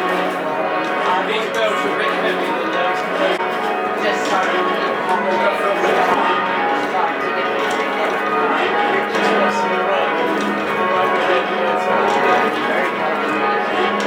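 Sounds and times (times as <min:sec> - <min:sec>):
church tower bells ringing: 0:00.0 - 0:14.0.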